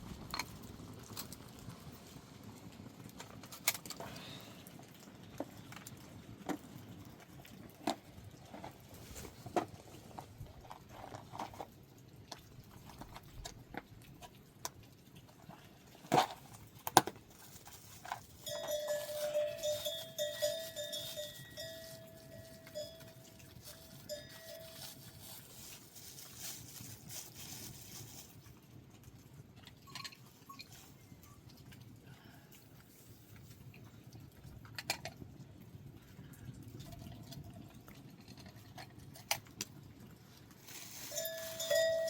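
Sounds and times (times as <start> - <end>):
livestock bell clanking: 18.4 - 24.9, 41.1 - 42.0.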